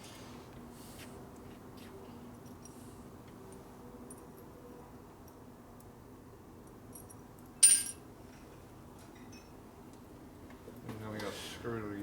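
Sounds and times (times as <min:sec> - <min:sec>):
sharp metallic clink: 0:07.0 - 0:08.0.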